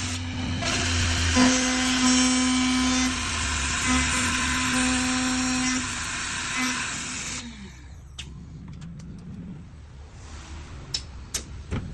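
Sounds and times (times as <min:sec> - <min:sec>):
drilling machine spindles whirring: 0:00.0 - 0:08.2.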